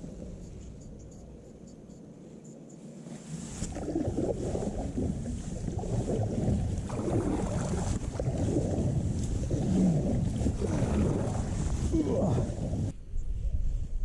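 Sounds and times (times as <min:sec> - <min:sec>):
water moving around kayak: 0:02.8 - 0:13.0
wind rumbling on microphone: 0:03.2 - 0:14.0.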